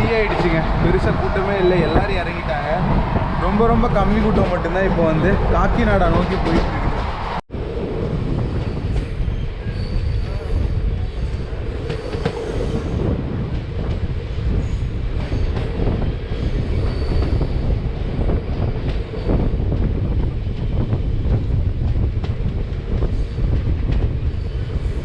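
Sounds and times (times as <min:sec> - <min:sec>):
train wheels rumbling on rails: 0:00.0 - 0:25.0
faint high wheel squeal: 0:08.7 - 0:11.2.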